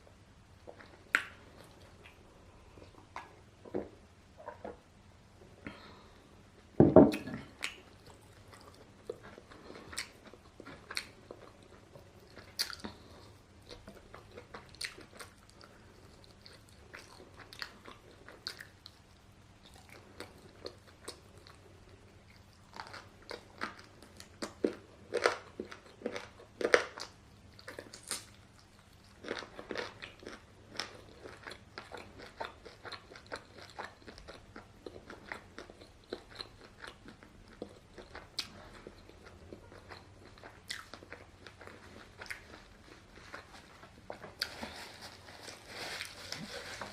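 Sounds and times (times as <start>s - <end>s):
crunchy food chewing: 7.3s - 46.9s.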